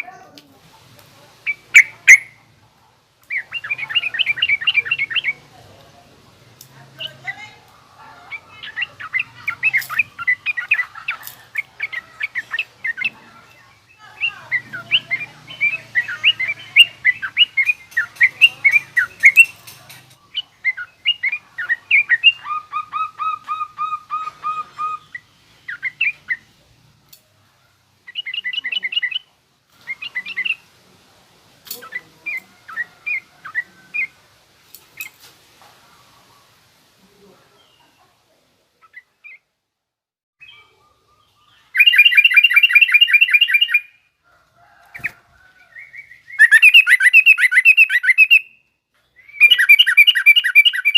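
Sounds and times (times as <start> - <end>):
bird harsh chattering call: 1.4 - 2.4, 3.3 - 5.5, 8.3 - 26.5, 41.7 - 43.9, 45.8 - 48.5, 49.3 - 50.9.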